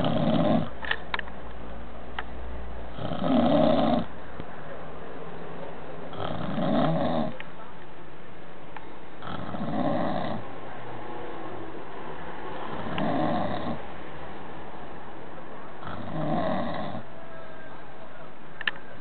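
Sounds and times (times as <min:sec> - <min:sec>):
steady background noise: 0:00.0 - 0:19.0
person snoring: 0:15.8 - 0:17.0.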